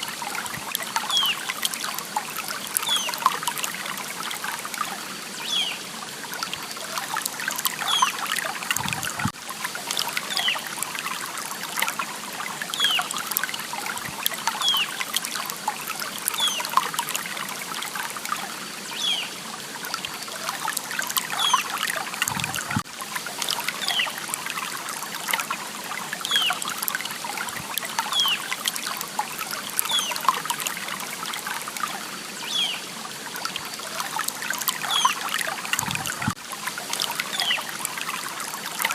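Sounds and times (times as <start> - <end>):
water drips and splashes: 0.0 - 38.9
water trickling: 0.0 - 38.9.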